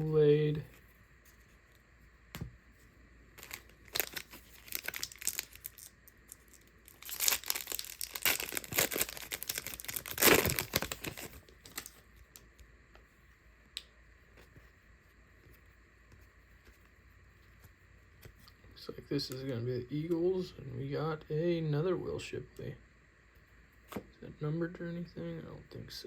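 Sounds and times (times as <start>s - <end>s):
plastic wrapper tearing and crinkling: 3.4s - 12.1s.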